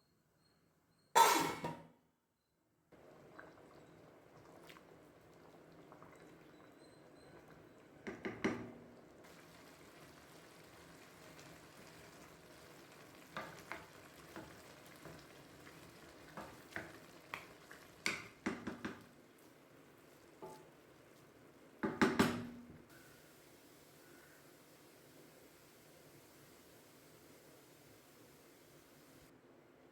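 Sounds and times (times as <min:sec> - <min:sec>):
faint sizzle: 0:02.8 - 0:29.9
spoon stirring and scraping pot: 0:13.2 - 0:22.5.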